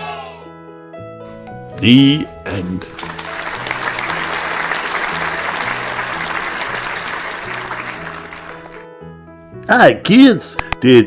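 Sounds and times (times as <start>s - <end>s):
light background music: 0.0s - 11.0s
applause and clapping: 1.8s - 8.9s.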